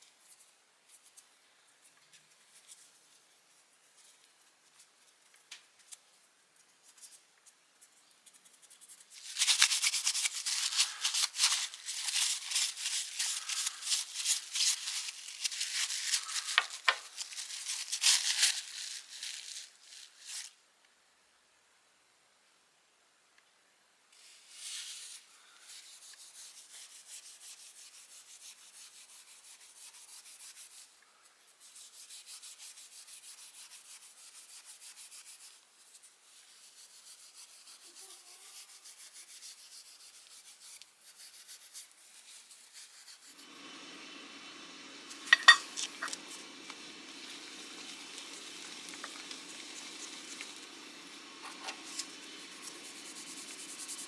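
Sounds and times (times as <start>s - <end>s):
metal scrubbed by hand: 44.7s - 54.0s
rotary tool grinding: 45.1s - 46.8s.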